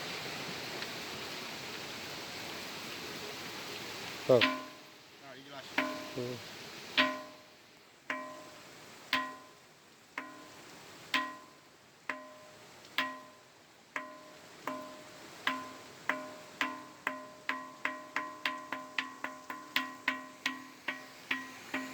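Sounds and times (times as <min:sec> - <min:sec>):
ringing stone being struck: 0:04.3 - 0:04.9, 0:05.7 - 0:07.5, 0:08.1 - 0:09.6, 0:10.2 - 0:21.9.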